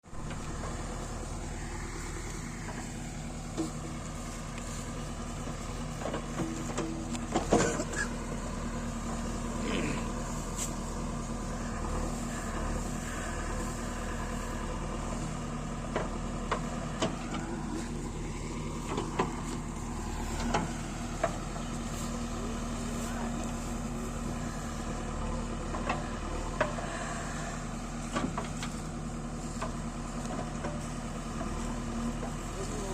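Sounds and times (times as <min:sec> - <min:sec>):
diesel engine running: 0:00.0 - 0:32.9
short knocks and clanks: 0:05.4 - 0:08.1.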